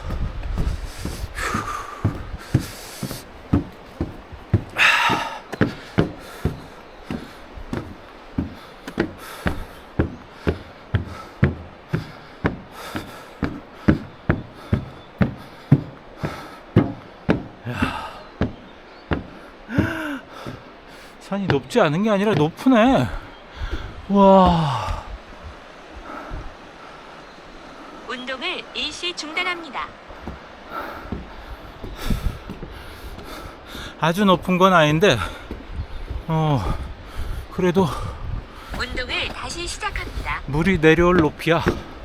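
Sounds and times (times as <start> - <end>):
footsteps on a trail: 0.0 - 42.0
breathy exhales: 0.6 - 21.2, 23.0 - 28.1, 30.0 - 34.1.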